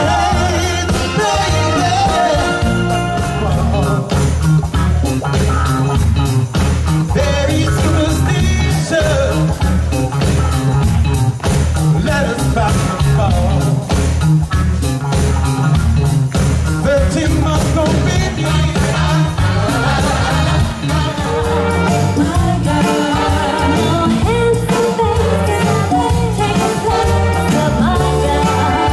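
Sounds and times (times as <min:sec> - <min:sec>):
vocalist singing: 0:00.0 - 0:04.2, 0:07.0 - 0:09.7, 0:12.0 - 0:13.9, 0:16.8 - 0:28.9
live soul band playing: 0:00.0 - 0:28.9.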